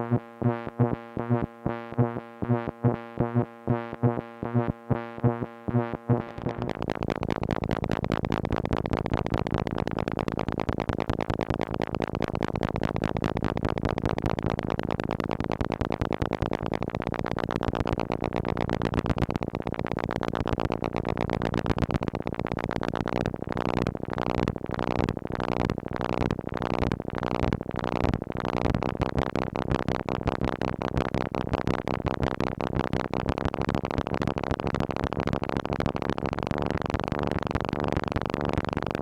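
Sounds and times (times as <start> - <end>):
synthesizer plucked pulses: 0.0 - 26.2.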